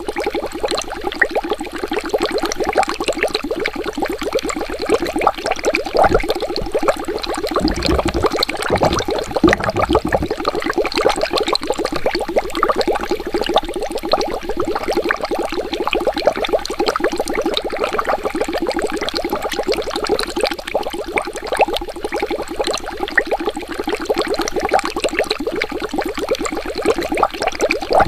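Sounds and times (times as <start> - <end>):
water bubbling: 6.0 - 10.9.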